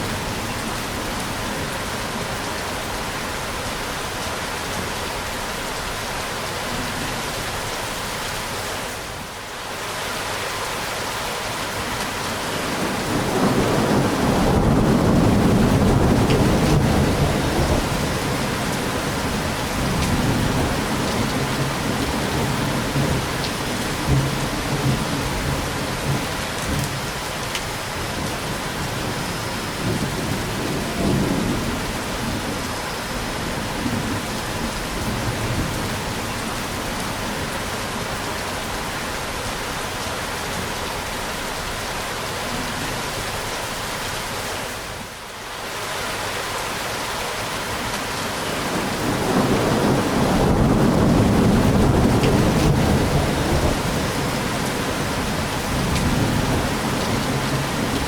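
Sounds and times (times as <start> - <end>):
steady rain: 0.0 - 58.0
rolling thunder: 12.6 - 27.0, 48.6 - 58.0.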